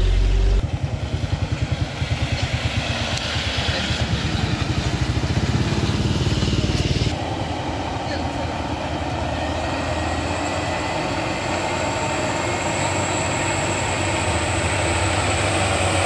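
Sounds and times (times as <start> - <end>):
engine running with pulsing beat: 0.0 - 16.0.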